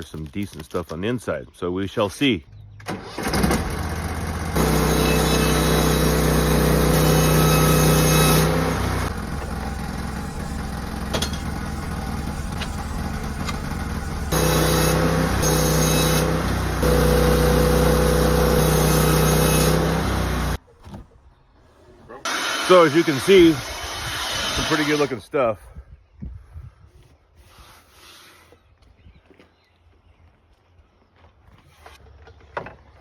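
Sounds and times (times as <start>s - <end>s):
sawmill engine running: 2.9s - 20.6s, 22.3s - 25.2s.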